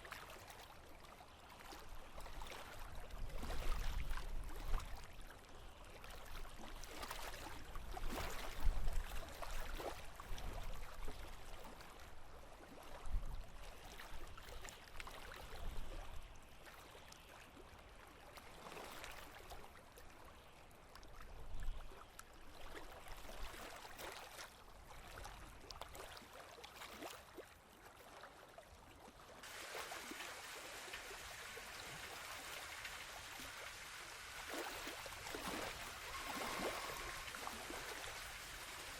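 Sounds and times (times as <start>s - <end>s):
small waves lapping and splashing: 0.0s - 38.9s
rushing hiss of water: 29.4s - 38.9s.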